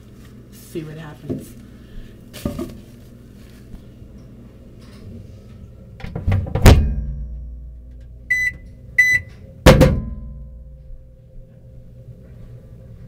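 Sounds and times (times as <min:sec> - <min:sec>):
microwave humming: 0:00.0 - 0:13.0
short high keypad beeps: 0:08.3 - 0:09.3
microwave door knocks: 0:09.7 - 0:10.2
loud thump: 0:09.7 - 0:10.3.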